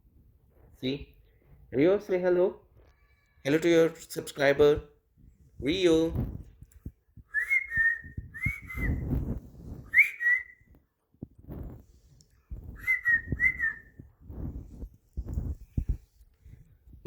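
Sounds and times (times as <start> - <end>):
soft rustling: 2.7 - 17.0
parrot whistled chirps: 7.4 - 9.1, 9.9 - 10.7, 12.8 - 13.9.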